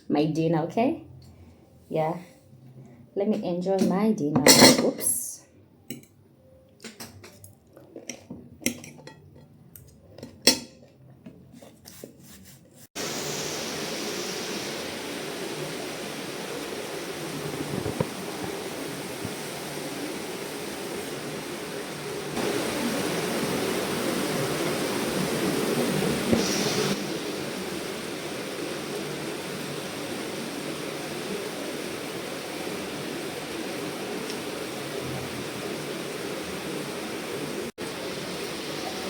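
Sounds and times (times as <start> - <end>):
cutlery and dishes clinking: 3.8 - 5.2, 6.8 - 10.9
steady rushing noise: 13.0 - 39.0.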